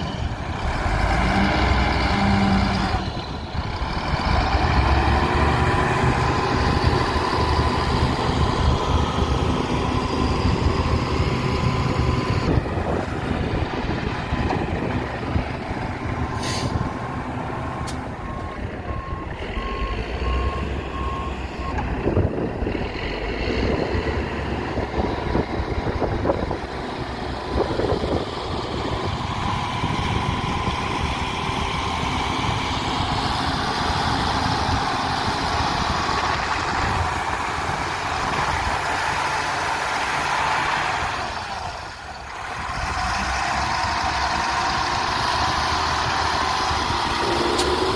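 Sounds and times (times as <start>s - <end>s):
earthmoving machine diesel engine: 0.0s - 47.9s
reversing alarm beeps: 18.3s - 21.8s.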